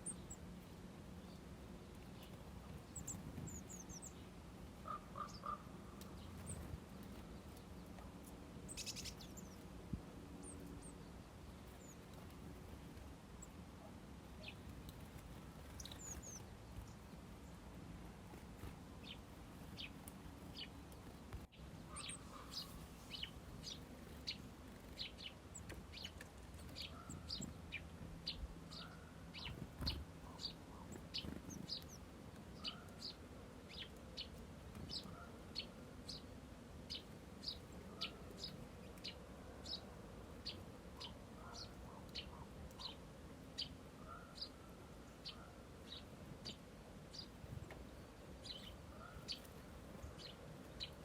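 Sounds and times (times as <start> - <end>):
songbirds chirping: 0.0 - 51.0.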